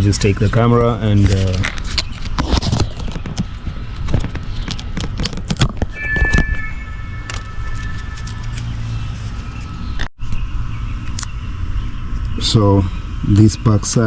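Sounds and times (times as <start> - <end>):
steady high tones: 5.9 - 10.1.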